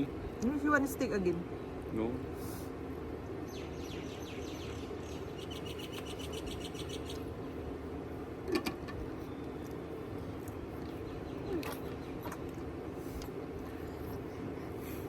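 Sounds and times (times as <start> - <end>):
low background hum: 0.0 - 15.0
small bird chirping: 3.4 - 7.4.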